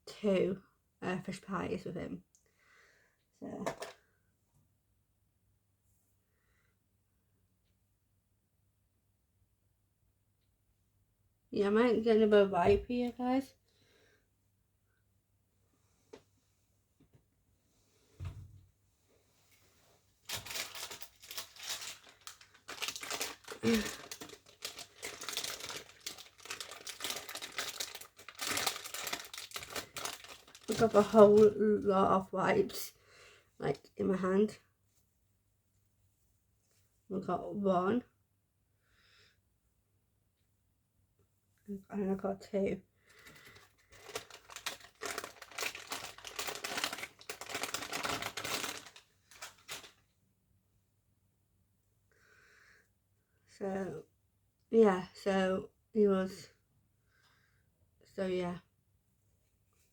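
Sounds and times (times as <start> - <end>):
wipes packet crinkling: 20.2 - 31.6, 43.2 - 50.0.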